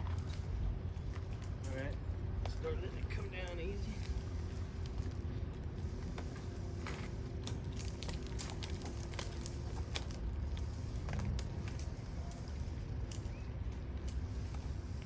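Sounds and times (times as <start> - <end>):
branches and leaves crackling: 7.4 - 14.5.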